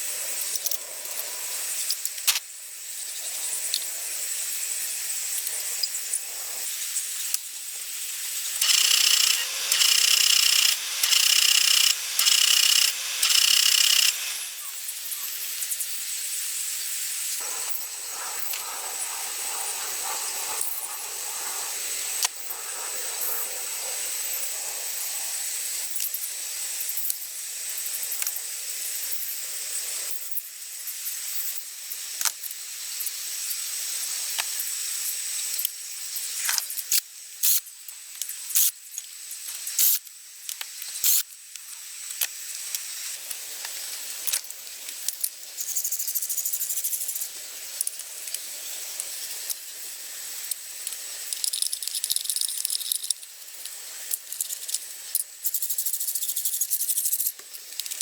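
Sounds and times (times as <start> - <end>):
steady hiss: 0.0 - 58.0
rough sanding strokes: 17.4 - 25.2.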